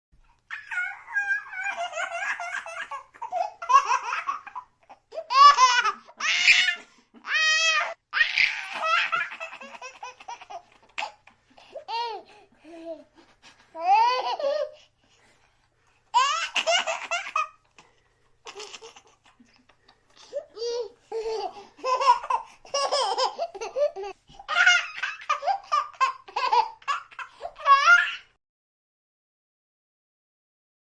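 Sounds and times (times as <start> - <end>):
baby laughing: 0.5 - 13.1, 13.7 - 14.8, 16.1 - 17.8, 18.4 - 28.3
baby breathing: 20.1 - 24.5.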